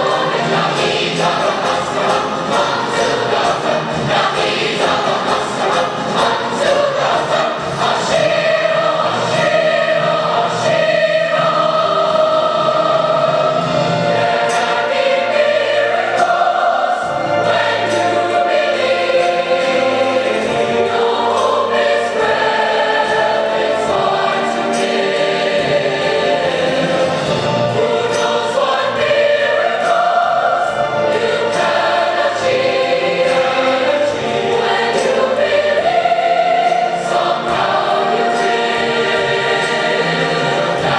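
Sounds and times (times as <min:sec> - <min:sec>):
choir singing long notes: 0:00.0 - 0:40.9.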